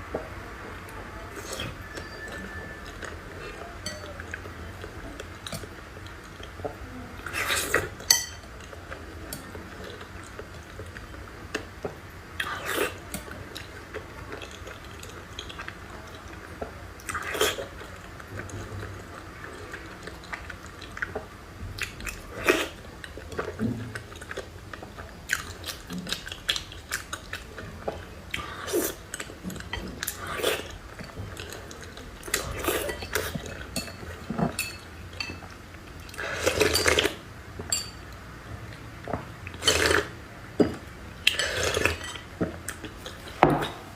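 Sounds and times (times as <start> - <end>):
cutlery clinking against dishes: 3.8 - 4.2, 8.0 - 8.5, 32.4 - 35.5, 37.7 - 38.0.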